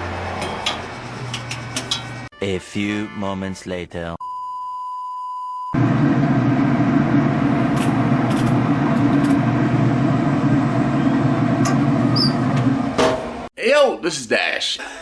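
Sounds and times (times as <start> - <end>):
loud steady rumble: 5.8 - 13.5.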